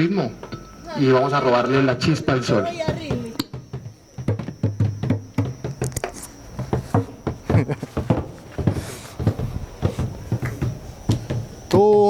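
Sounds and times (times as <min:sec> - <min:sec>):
hand drums beaten: 0:02.2 - 0:11.6.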